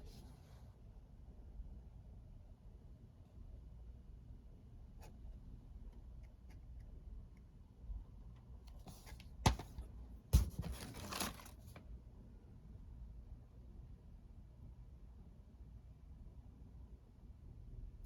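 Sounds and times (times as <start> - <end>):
packaging rustling and scraping: 10.4 - 11.8.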